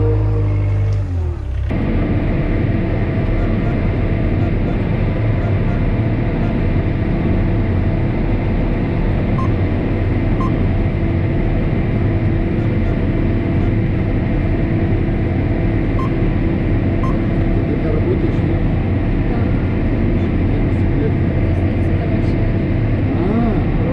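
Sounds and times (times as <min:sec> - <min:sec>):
mechanical engine drone: 0:00.0 - 0:23.9.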